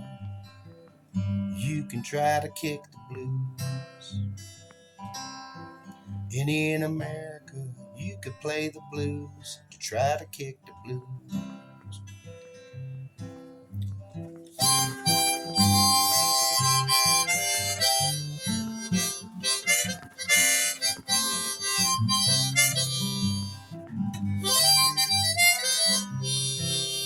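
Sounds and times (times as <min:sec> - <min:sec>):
strummed acoustic guitar: 0:00.0 - 0:27.0
blues harmonica playing: 0:14.6 - 0:27.0.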